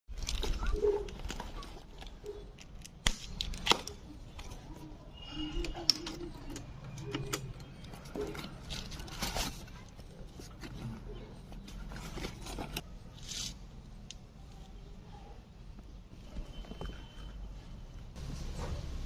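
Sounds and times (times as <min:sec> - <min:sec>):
plastic and cardboard rustling: 0:00.1 - 0:05.0, 0:05.9 - 0:13.8.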